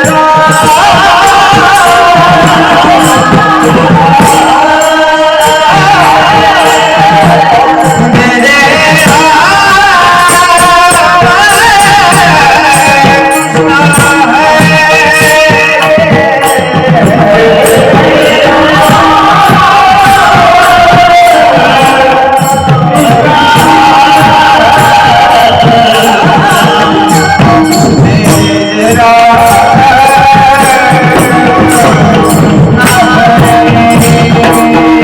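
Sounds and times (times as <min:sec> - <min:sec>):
devotional singing: 0:00.0 - 0:35.0
drum strokes: 0:00.0 - 0:35.0
steady accompaniment: 0:00.0 - 0:35.0.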